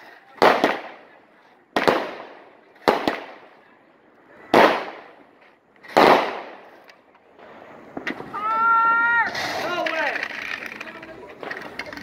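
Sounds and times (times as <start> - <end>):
fireworks bangs with echo: 0.4 - 3.6, 4.4 - 5.3, 5.9 - 6.8.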